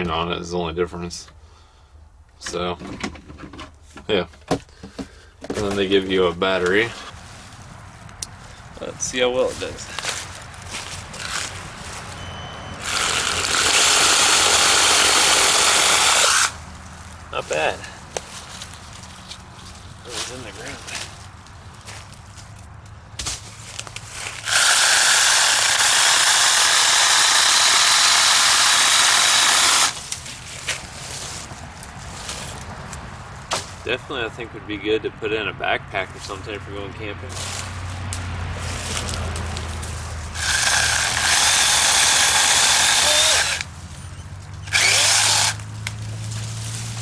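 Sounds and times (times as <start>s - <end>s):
mini chainsaw high whine: 12.2s - 16.6s, 24.4s - 30.0s, 40.3s - 43.7s, 44.6s - 45.7s.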